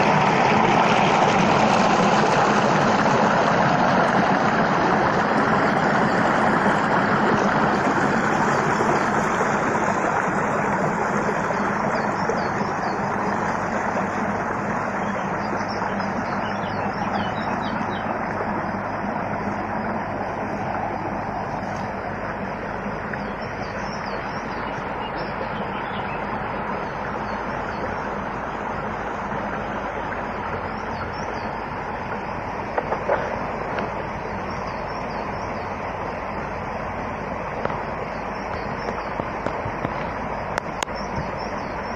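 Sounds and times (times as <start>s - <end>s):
rushing water: 0.0s - 41.9s
faint high bird chirps: 14.9s - 18.2s.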